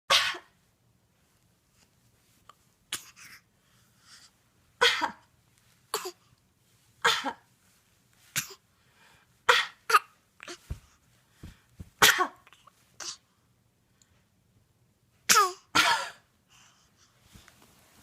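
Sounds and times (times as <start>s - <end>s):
infant fake coughing: 2.9s - 3.4s, 4.8s - 5.3s, 6.0s - 6.2s, 7.0s - 7.5s, 9.5s - 10.6s, 12.0s - 13.2s, 15.3s - 16.3s
adult imitation coughing: 12.0s - 12.4s, 15.3s - 16.3s.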